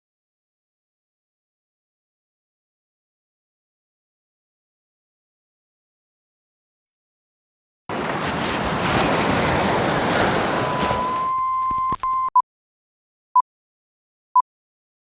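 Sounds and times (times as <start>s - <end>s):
short beeps: 10.5s - 12.4s.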